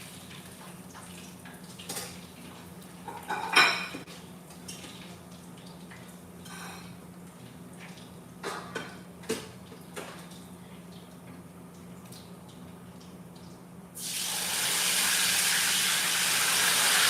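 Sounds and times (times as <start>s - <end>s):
dishes and cutlery clinking: 3.1s - 4.1s, 6.4s - 6.9s.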